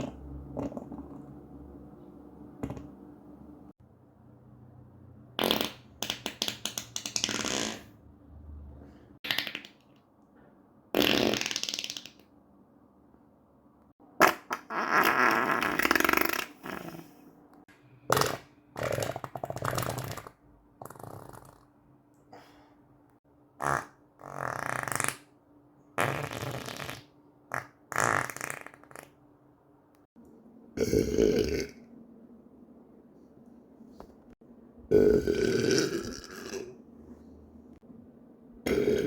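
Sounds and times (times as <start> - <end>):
person farting: 5.4 - 8.0, 10.9 - 12.2, 14.2 - 17.2, 18.1 - 21.7, 23.6 - 25.3, 26.0 - 29.2, 34.9 - 36.8, 38.6 - 39.0.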